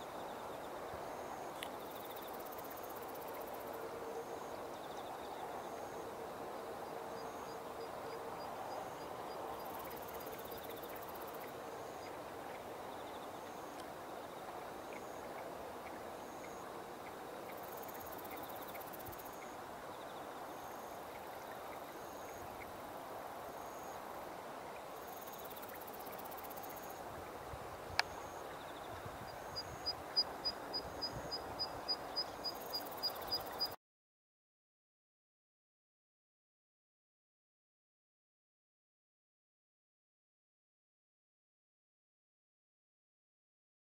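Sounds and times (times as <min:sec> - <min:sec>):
insects chirping: 0:00.0 - 0:06.0, 0:06.8 - 0:24.2, 0:24.8 - 0:27.0, 0:28.0 - 0:33.8.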